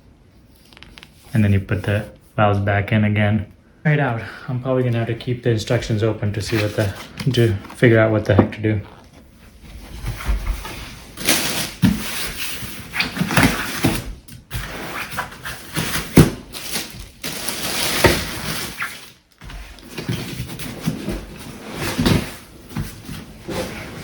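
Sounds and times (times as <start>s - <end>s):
packaging rustling and crinkling: 5.0s - 8.0s, 8.7s - 24.0s.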